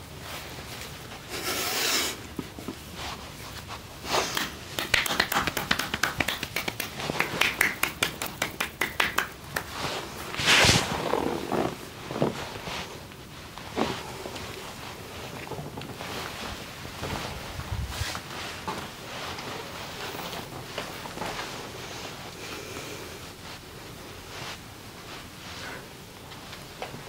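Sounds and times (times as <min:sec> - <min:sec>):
hands rubbing on skin: 0:02.9 - 0:12.9
quick tapping slaps on body: 0:04.3 - 0:09.8.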